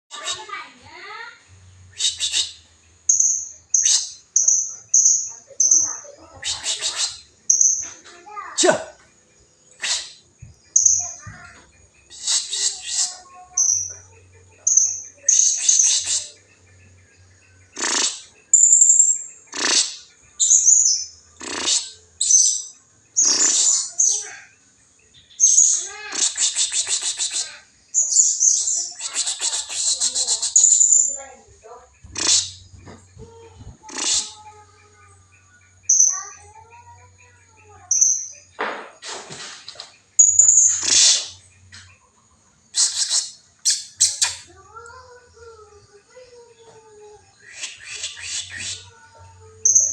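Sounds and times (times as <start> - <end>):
parrot harsh rasping calls: 19.5 - 20.8, 21.4 - 22.0, 32.2 - 32.6, 33.8 - 34.6.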